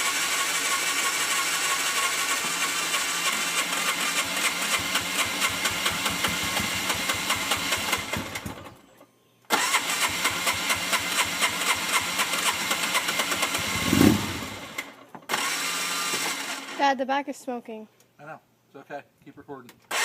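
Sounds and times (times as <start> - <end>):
engine cranking on electric starter: 0.0 - 8.8, 9.5 - 16.8
engine almost firing burst: 9.5 - 16.7.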